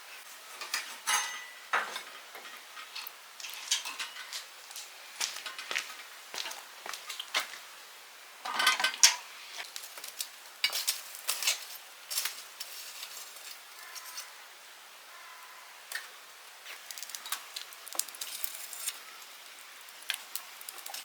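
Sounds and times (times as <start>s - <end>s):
dishes and utensils clinking: 0.5s - 4.9s, 8.4s - 9.3s, 10.6s - 14.3s.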